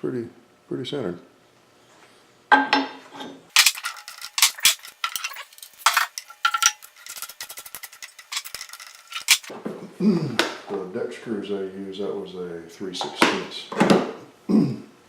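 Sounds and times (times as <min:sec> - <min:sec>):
small metal pieces clinking: 0:03.5 - 0:09.5.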